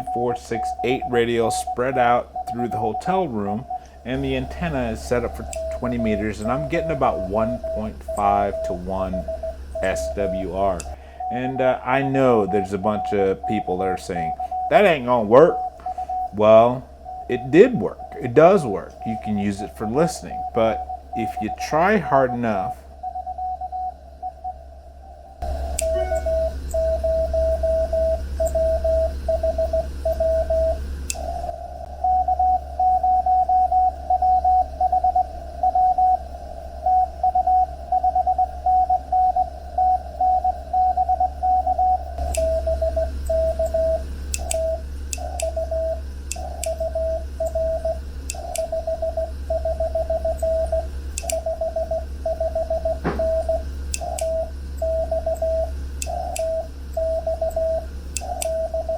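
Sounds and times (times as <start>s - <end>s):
radio band hiss: 0.0s - 22.9s
morse code tone: 0.0s - 58.9s
static clicks: 0.0s - 58.9s.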